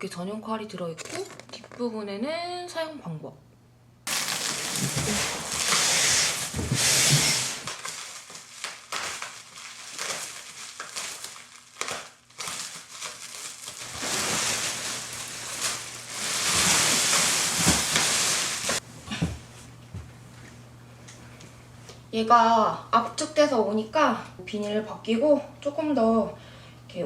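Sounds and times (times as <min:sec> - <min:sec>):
plastic wrapping crinkling: 0:04.1 - 0:18.8.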